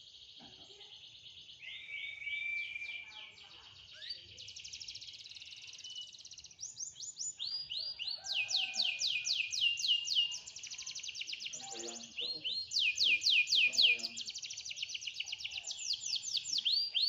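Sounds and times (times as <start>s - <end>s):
canary singing: 3.9s - 17.0s.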